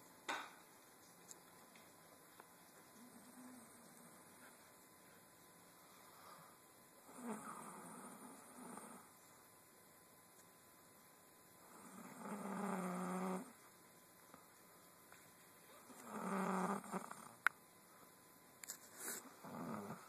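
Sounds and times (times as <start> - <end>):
soft breathing: 2.9 - 6.8
person snoring: 7.1 - 9.1, 11.7 - 13.5, 16.0 - 17.4, 19.2 - 20.0.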